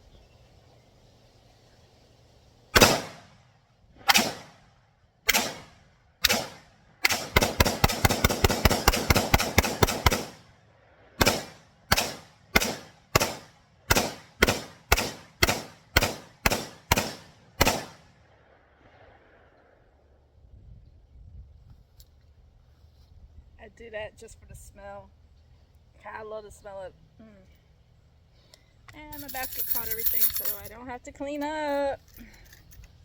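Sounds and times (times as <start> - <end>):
rifle shots: 2.8 - 3.3, 4.1 - 4.6, 5.3 - 10.4, 11.2 - 18.0.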